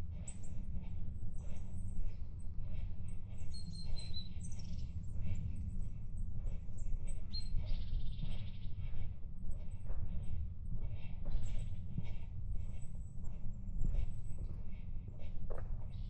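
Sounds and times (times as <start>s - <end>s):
steady low rumble: 0.0s - 16.0s
footsteps on woodland track: 9.7s - 16.0s.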